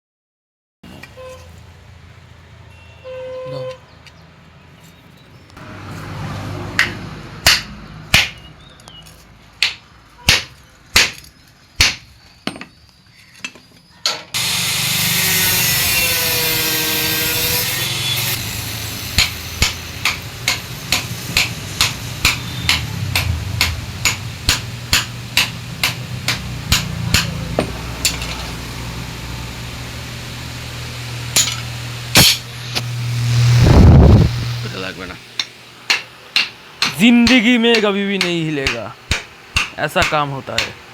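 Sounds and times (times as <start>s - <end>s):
hammer striking: 6.8s - 8.5s, 9.6s - 12.7s, 17.6s - 28.5s, 31.4s - 32.9s, 35.4s - 40.8s
loud steady wavering noise: 17.3s - 40.9s.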